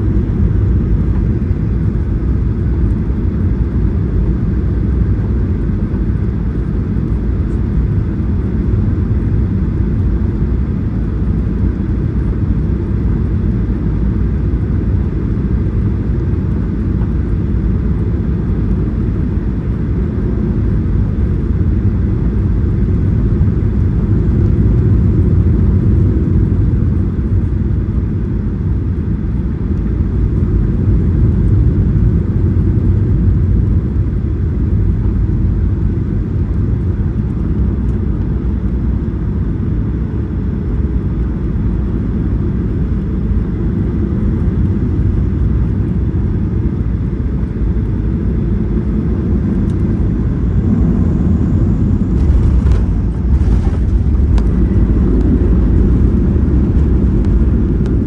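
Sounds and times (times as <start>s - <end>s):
low rumble of jet engines: 0.0s - 58.0s
cabin jolt: 52.2s - 57.8s.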